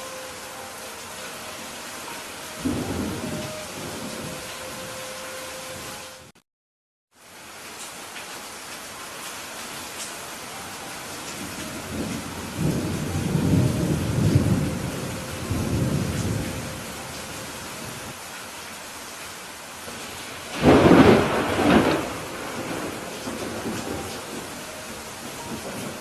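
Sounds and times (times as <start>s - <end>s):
steady rain: 0.0s - 6.4s, 7.1s - 26.0s
thunder rumbling: 2.0s - 5.0s, 11.2s - 18.2s, 20.5s - 26.0s
thunderclap: 20.5s - 24.6s.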